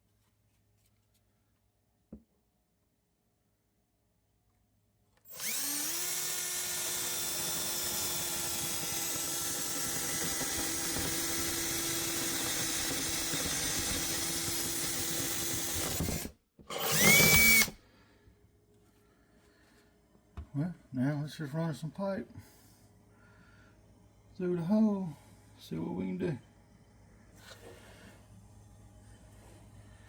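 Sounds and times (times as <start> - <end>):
power drill boring: 5.3 - 17.8.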